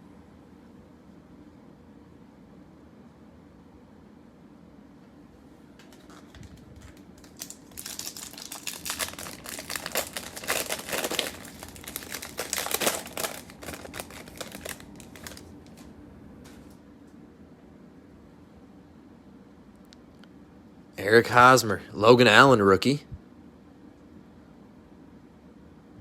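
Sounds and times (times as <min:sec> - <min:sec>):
foil wrapper crinkling and tearing: 0:05.8 - 0:15.9.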